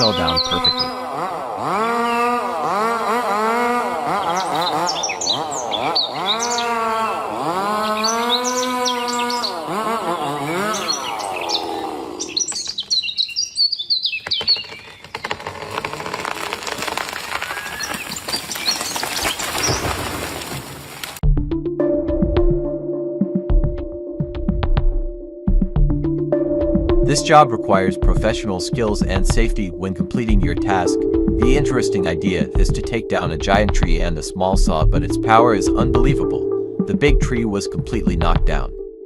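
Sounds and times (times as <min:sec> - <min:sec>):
chainsaw engine revving: 0:00.0 - 0:12.7, 0:15.1 - 0:21.2
rough noisy crackle: 0:14.6 - 0:21.2.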